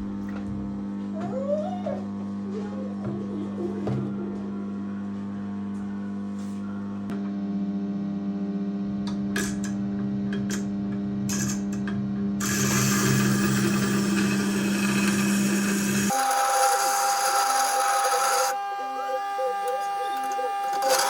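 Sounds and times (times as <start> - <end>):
grinder motor humming: 11.3 - 21.0
blade rasping on grinding stone: 12.4 - 18.5, 20.7 - 21.0.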